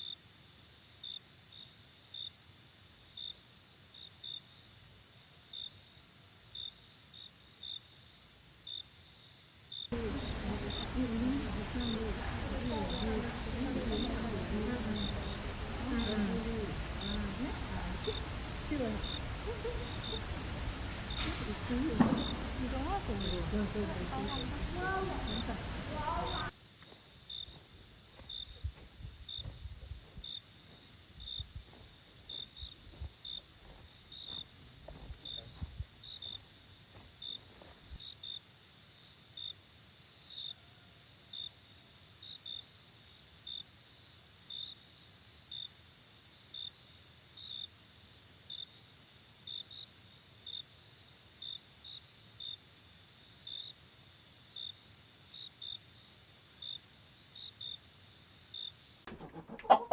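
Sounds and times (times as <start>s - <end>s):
insects chirping: 0.0s - 40.7s, 41.3s - 59.9s
low knocks and rumble: 10.0s - 26.0s.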